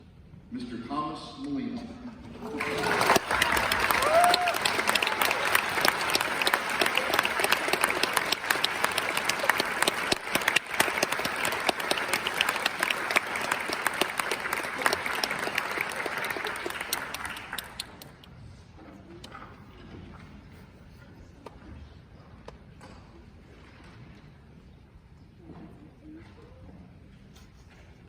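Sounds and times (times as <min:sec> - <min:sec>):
audience applauding: 0:02.4 - 0:18.2.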